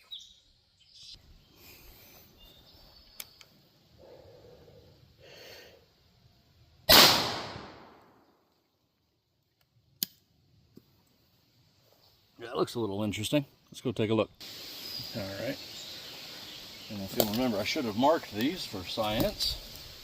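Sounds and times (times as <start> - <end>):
shotgun shot: 6.9 - 8.2.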